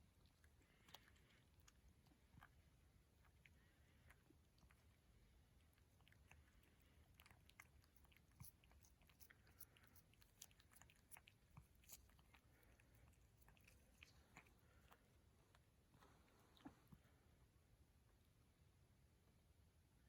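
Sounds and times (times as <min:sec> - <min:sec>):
cat chewing clicks: 0:04.2 - 0:15.1.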